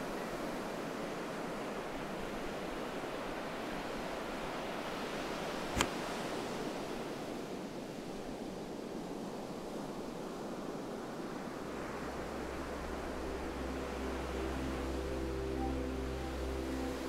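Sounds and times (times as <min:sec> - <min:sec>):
ocean surf rushing: 0:09.9 - 0:17.0.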